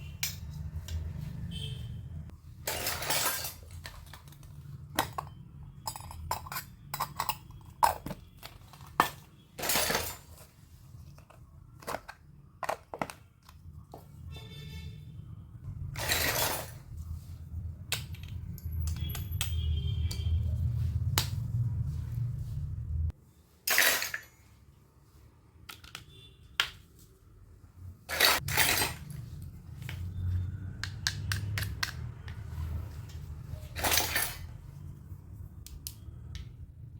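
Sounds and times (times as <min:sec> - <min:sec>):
toy kitchen pieces clinking: 0:02.6 - 0:10.4, 0:23.6 - 0:24.4, 0:33.7 - 0:34.6.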